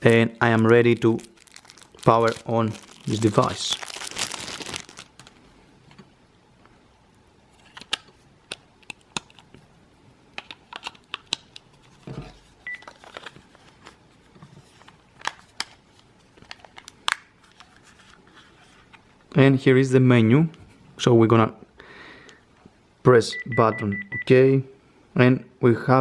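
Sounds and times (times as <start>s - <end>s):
high beep: 23.3s - 24.3s.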